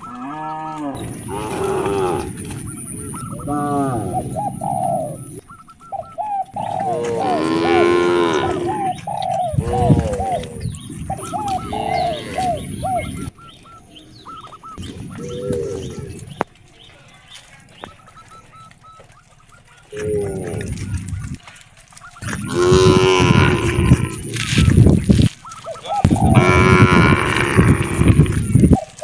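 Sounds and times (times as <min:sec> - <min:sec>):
cattle mooing: 0:00.0 - 0:04.4, 0:06.6 - 0:10.6, 0:11.2 - 0:13.3, 0:22.2 - 0:24.8, 0:26.3 - 0:28.6
bird calling: 0:00.0 - 0:29.0.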